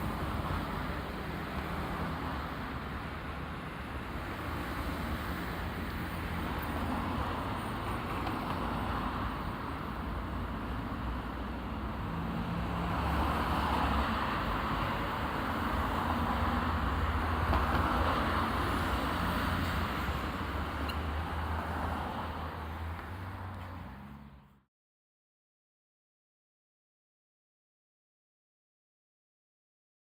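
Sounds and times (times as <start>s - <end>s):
road traffic passing: 0.0s - 24.7s.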